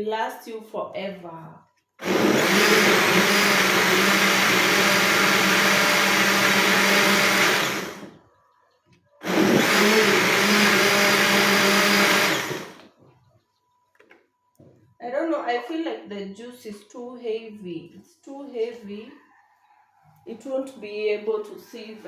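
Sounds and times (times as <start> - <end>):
blender motor running: 2.0 - 8.1, 9.2 - 12.8.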